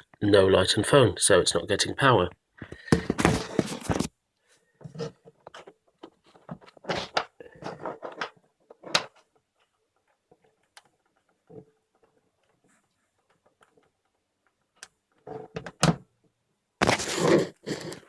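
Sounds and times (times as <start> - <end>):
small clicks taps and rustles: 5.2 - 17.0.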